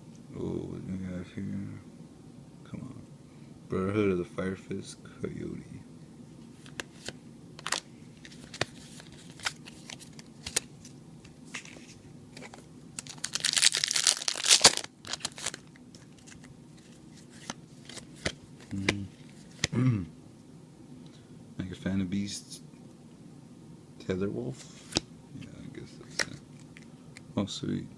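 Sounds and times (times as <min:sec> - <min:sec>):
cards shuffling and clicking: 0:06.6 - 0:19.8, 0:24.7 - 0:25.1, 0:25.9 - 0:26.9
foil wrapper crinkling and tearing: 0:07.6 - 0:10.7, 0:12.4 - 0:16.5.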